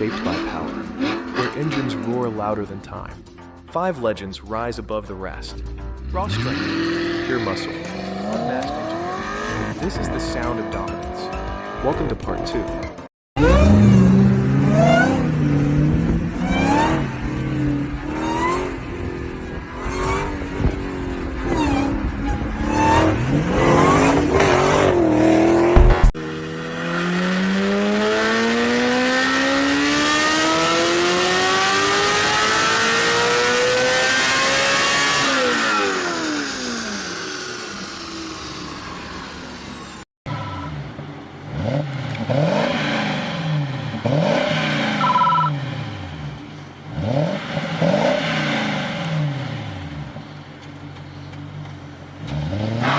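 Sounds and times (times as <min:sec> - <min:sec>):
car accelerating hard: 0:00.0 - 0:02.6, 0:06.0 - 0:50.2, 0:52.2 - 0:52.9
car engine revving: 0:00.0 - 0:03.1, 0:05.9 - 0:50.4.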